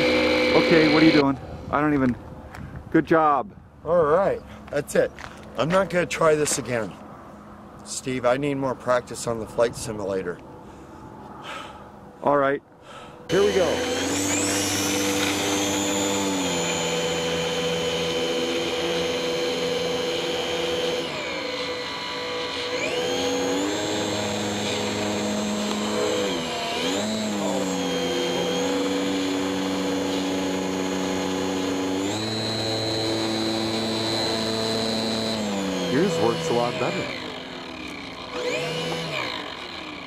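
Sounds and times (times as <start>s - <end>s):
model airplane motor whining: 0.0s - 1.4s, 13.3s - 40.0s.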